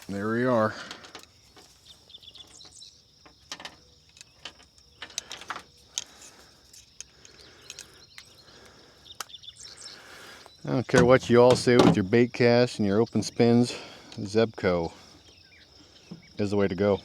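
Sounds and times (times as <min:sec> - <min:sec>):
insect hum: 0:00.0 - 0:17.0
fishing gear knocks and clicks: 0:00.7 - 0:01.7, 0:02.4 - 0:09.4.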